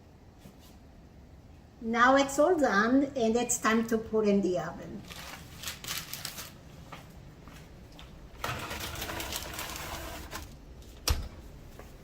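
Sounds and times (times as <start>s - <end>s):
rushing noise from open oven: 8.3s - 10.6s.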